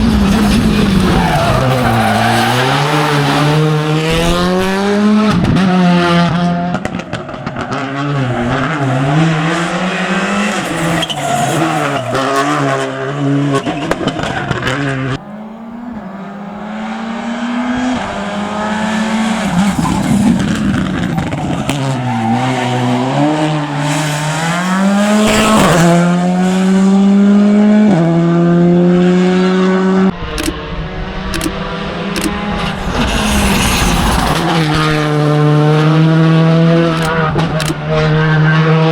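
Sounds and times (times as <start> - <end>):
rally car engines revving: 0.0 - 38.9
tyre squeal: 8.3 - 12.9, 15.2 - 25.7, 32.6 - 35.2.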